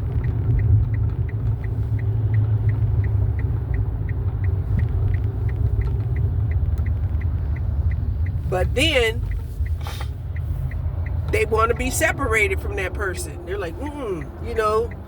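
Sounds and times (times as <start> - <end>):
car cabin rumble: 0.0 - 15.0
light even ticking: 0.0 - 15.0.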